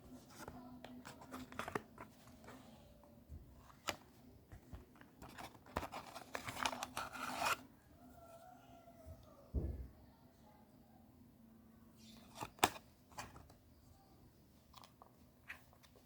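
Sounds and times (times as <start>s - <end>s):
packaging clicks and scraping: 4.9s - 7.6s.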